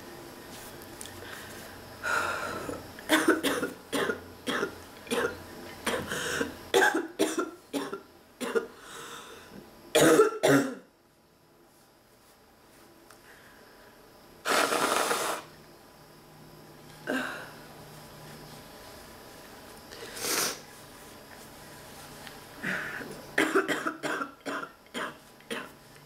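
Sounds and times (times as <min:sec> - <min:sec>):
man coughing harshly: 0:03.1 - 0:06.1, 0:06.8 - 0:08.7, 0:10.0 - 0:10.8, 0:23.4 - 0:25.7.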